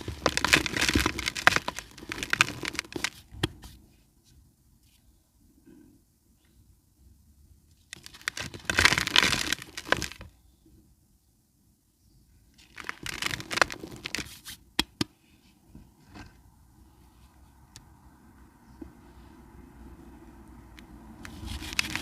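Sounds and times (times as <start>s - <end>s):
dry cement crumbling and crackling: 0.0s - 3.6s, 7.9s - 10.3s, 12.6s - 14.4s, 21.2s - 22.0s.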